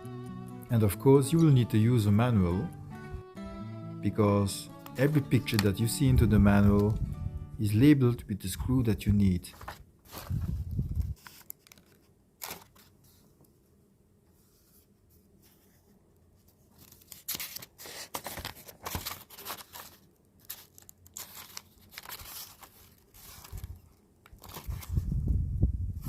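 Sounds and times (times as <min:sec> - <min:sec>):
rustling and tearing packaging: 0:09.5 - 0:13.0, 0:16.7 - 0:25.1.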